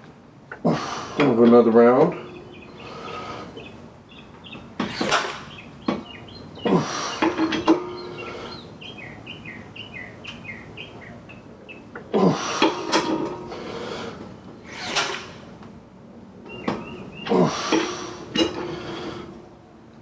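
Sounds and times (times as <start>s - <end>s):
birds chirping: 0.5s - 15.6s, 16.3s - 19.7s
breaker bar creaking and clanking: 4.3s - 8.5s, 11.9s - 15.7s, 16.4s - 19.4s.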